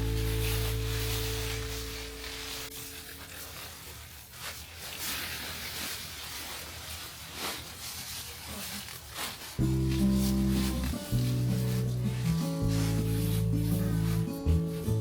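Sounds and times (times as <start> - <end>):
background music: 0.0 - 3.3, 9.6 - 15.0
brushing strokes: 0.0 - 15.0
rustling and scraping: 0.0 - 15.0.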